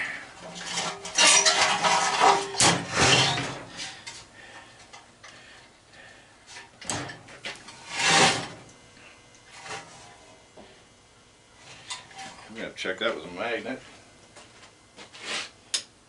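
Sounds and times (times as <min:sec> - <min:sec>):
metal scrape: 0:00.4 - 0:03.9, 0:07.7 - 0:08.6
metal parts knocking and clinking: 0:00.7 - 0:03.4.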